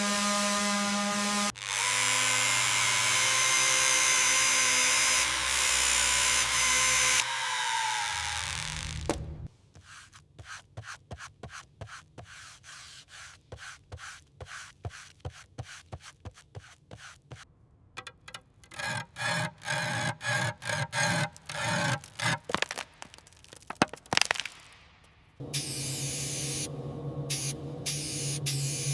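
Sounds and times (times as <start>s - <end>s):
hand tool rubbing a surface: 9.7s - 17.5s.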